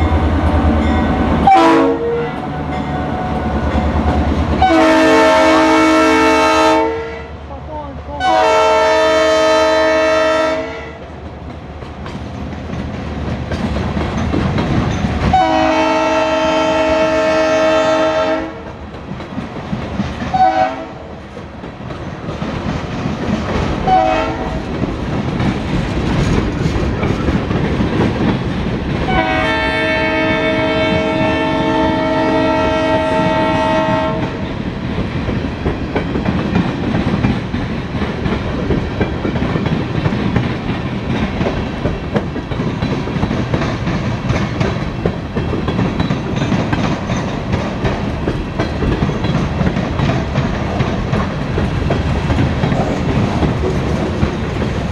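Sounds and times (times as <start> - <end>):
train rumbling by: 0.0 - 54.9
locomotive air horn blasts: 1.4 - 3.3, 4.6 - 7.4, 8.2 - 11.0, 15.3 - 18.6, 20.3 - 21.0, 23.9 - 24.6, 29.1 - 34.4
wheels clacking over rail joints: 11.0 - 16.9, 18.6 - 20.6, 21.2 - 30.2, 32.7 - 54.9.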